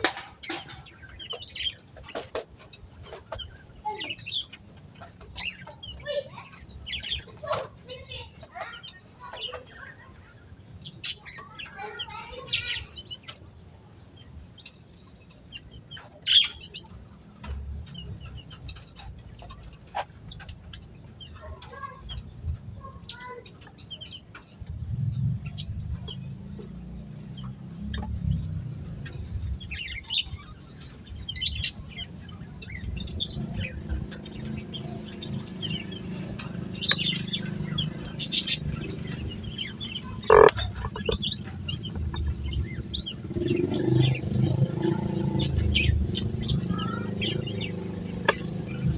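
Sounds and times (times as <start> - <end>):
small birds chirping: 0.0 - 48.9
steady low rumble: 24.7 - 26.9, 27.8 - 48.9.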